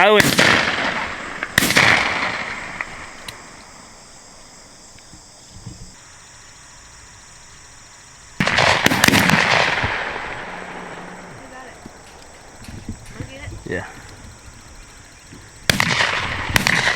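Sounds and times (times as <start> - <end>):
shotgun shots: 0.0 - 3.6, 8.4 - 12.3, 15.6 - 16.9
high insect drone: 0.0 - 16.9.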